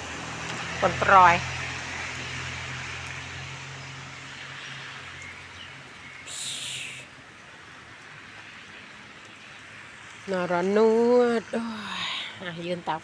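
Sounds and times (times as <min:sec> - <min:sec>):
low engine hum: 0:00.0 - 0:07.0
light drizzle: 0:00.0 - 0:13.0.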